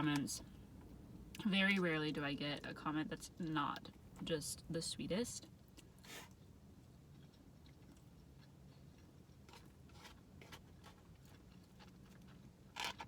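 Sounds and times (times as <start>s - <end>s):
low steady hum: 0.0s - 13.0s
chewing and mouth clicks: 5.5s - 13.0s.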